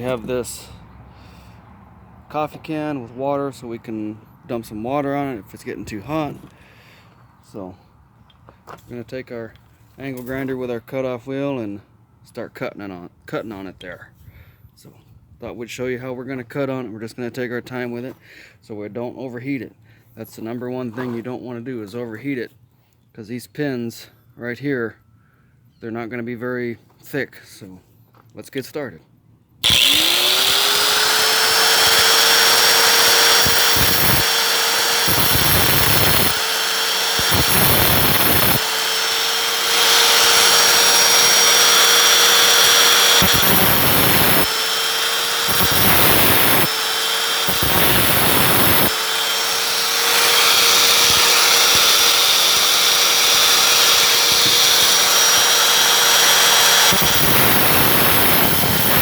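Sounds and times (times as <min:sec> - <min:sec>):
angle grinder whining: 0:29.6 - 0:59.0
grinder cutting metal: 0:29.6 - 0:59.0.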